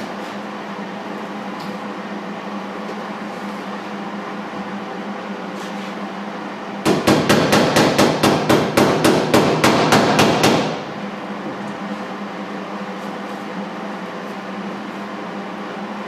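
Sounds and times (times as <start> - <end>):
steady hum: 0.0 - 16.0
hammer striking sheet metal: 6.8 - 10.9.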